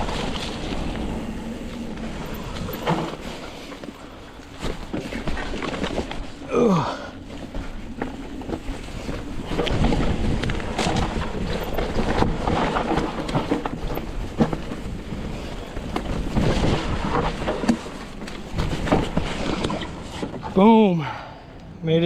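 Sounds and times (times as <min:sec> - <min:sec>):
wind rushing over microphone: 0:00.0 - 0:06.5, 0:07.1 - 0:20.6
bike knocking and rattling: 0:00.0 - 0:20.8.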